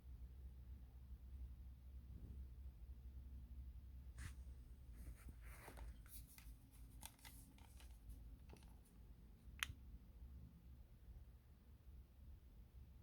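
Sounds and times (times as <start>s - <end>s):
low room hum: 0.0s - 13.0s
faint rustles: 4.1s - 9.0s.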